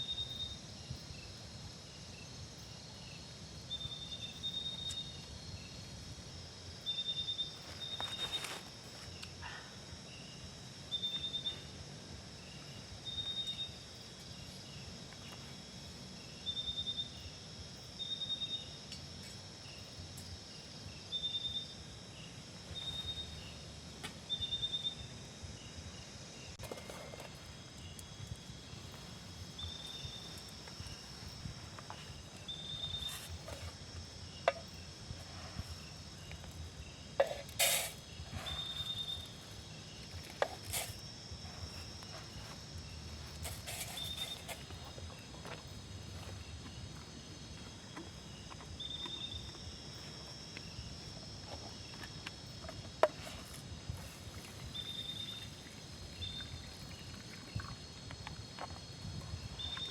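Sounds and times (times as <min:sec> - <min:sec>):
high-pitched insect drone: 0:00.0 - 0:59.9
insect buzzing chirps: 0:00.0 - 0:59.9.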